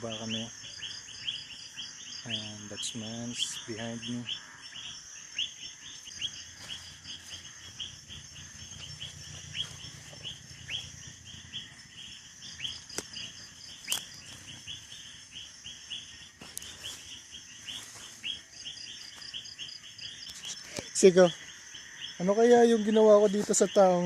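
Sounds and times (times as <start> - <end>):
high pulsing insect buzz: 0.0 - 24.0
rapid bird chirping: 0.0 - 24.0
sharp clicks: 12.7 - 14.2.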